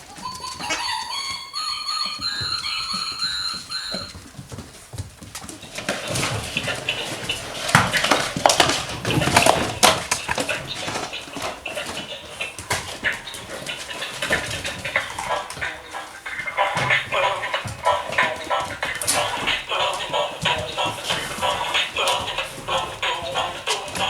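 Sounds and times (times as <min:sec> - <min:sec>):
puppies whining and yipping: 0:00.0 - 0:04.2
knocks and clicks: 0:00.2 - 0:04.1.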